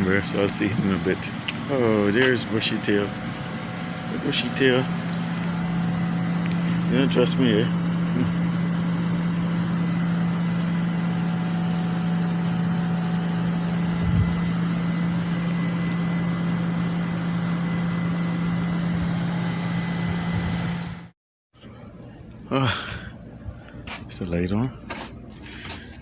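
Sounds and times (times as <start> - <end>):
vehicle engine idling: 0.0 - 19.5.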